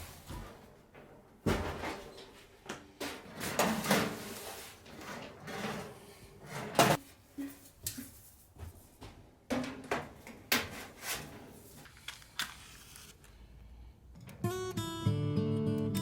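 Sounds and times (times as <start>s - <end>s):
kitchen items knocking and clattering: 0.0s - 2.2s, 2.8s - 8.2s, 9.4s - 11.4s.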